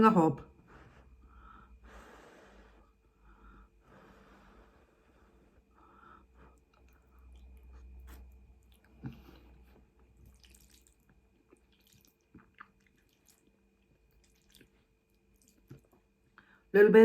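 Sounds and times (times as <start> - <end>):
person chewing food: 6.2 - 16.4.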